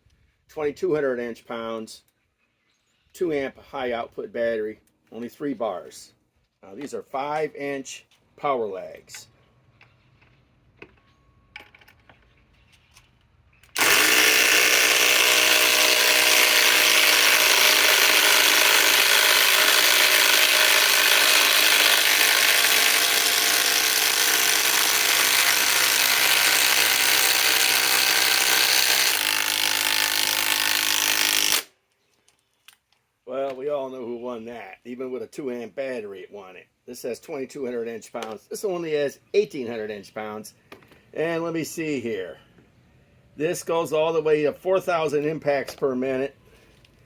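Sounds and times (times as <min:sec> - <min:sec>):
impact drivers hammering screws into wood: 0:13.6 - 0:31.7.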